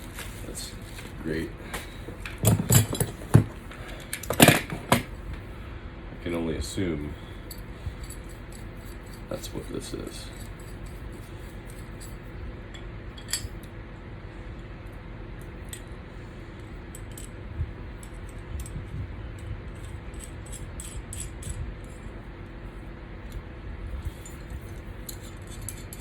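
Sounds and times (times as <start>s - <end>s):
steady low hum: 0.0s - 26.0s
small metal parts clinking: 2.2s - 3.3s, 7.5s - 12.3s, 13.2s - 13.7s, 16.9s - 17.4s, 18.0s - 22.2s, 24.0s - 26.0s.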